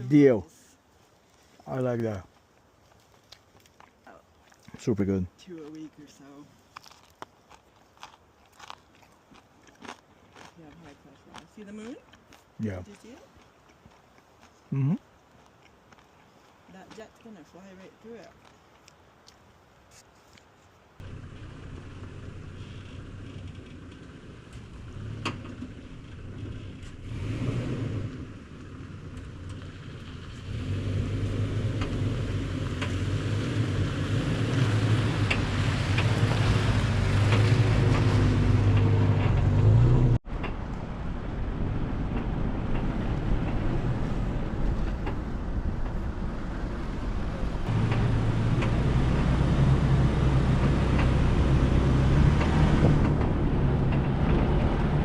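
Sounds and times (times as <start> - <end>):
engine humming: 21.0 - 55.0.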